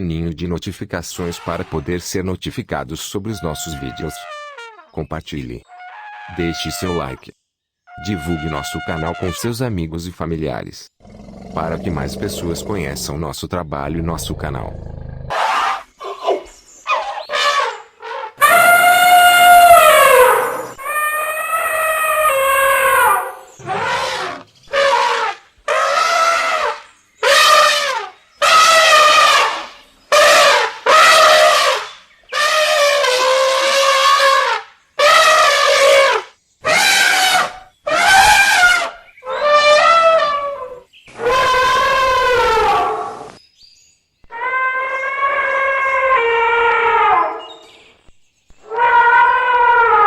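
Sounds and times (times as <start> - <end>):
elephants trumpeting: 11.0 - 15.8, 18.4 - 43.3, 48.6 - 50.0.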